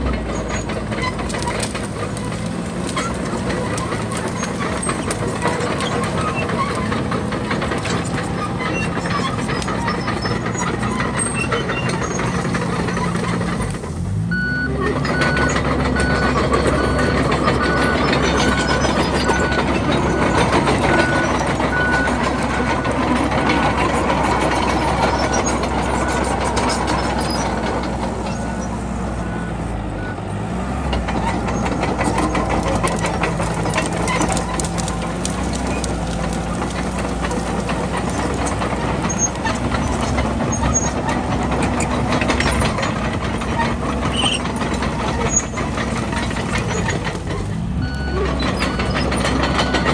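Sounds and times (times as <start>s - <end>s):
bulldozer diesel engine under load: 0.0s - 49.9s
reversing alarm beeping: 14.3s - 27.4s, 47.8s - 49.9s.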